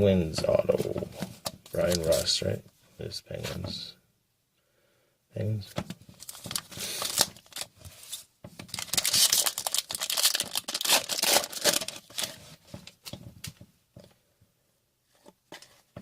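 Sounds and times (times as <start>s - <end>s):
foil wrapper tearing and crinkling: 6.2s - 12.4s.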